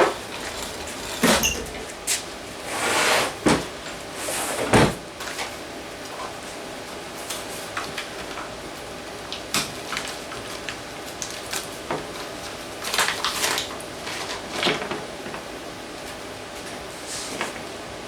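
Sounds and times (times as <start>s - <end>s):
tools and parts being handled: 0.0s - 2.3s.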